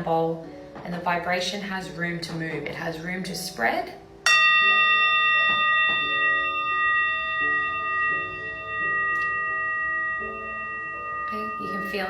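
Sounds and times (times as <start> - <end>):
soft melody of low notes: 0.0 - 12.0
singing bowl ringing: 4.2 - 12.0.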